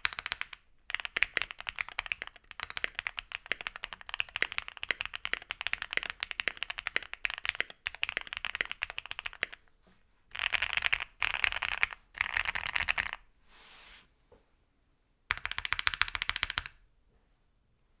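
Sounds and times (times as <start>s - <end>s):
rapid key press flurries: 0.0s - 9.6s, 10.3s - 13.2s, 15.3s - 16.7s
keyboard typing: 0.0s - 9.7s, 10.3s - 13.2s, 15.3s - 16.8s.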